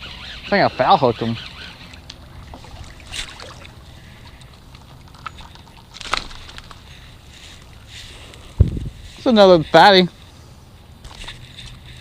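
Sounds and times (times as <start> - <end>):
water sloshing against boat: 1.3 - 8.0
low wind rumble: 1.7 - 12.0
sharp splashes or knocks: 2.5 - 3.8.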